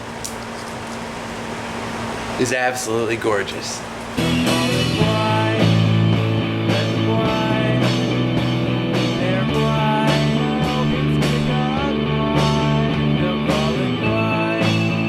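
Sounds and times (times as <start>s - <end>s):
rock music with guitar: 4.2s - 15.0s.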